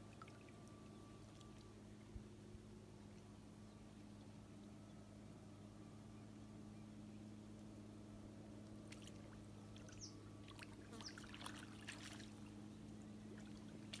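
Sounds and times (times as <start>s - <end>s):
steady low hum: 0.0s - 14.0s
water splashing and dripping: 8.9s - 12.5s, 13.3s - 14.0s.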